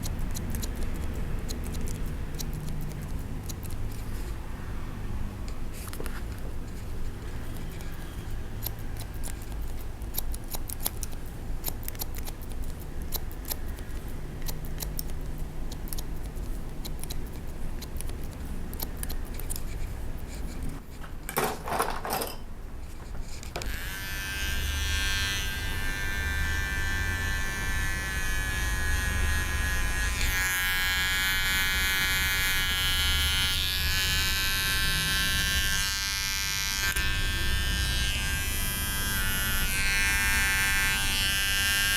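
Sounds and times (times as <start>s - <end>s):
scissors snipping hair: 0.0s - 4.4s, 5.4s - 20.8s, 25.0s - 41.9s
electric hair clippers buzzing: 23.6s - 41.9s.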